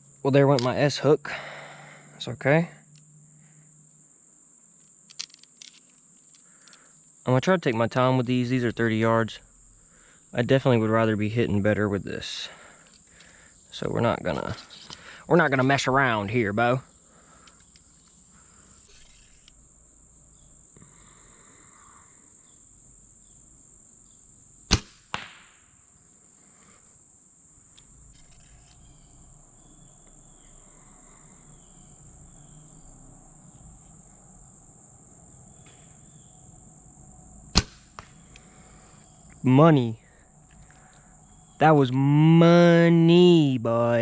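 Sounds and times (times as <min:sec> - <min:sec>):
bowstring release crack: 0:05.1 - 0:06.8, 0:17.4 - 0:19.6, 0:24.7 - 0:25.6, 0:27.7 - 0:29.0, 0:37.5 - 0:38.5
high-pitched insect drone: 0:05.2 - 0:24.5, 0:25.9 - 0:37.5
arrow thudding into target: 0:24.7 - 0:25.6, 0:37.5 - 0:38.2.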